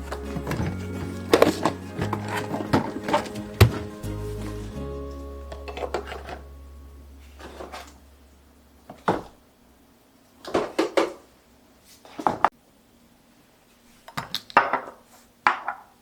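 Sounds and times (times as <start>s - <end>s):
kitchen items knocking and clattering: 0.0s - 4.9s, 5.5s - 6.5s, 7.2s - 8.0s, 8.9s - 9.4s, 10.4s - 11.2s.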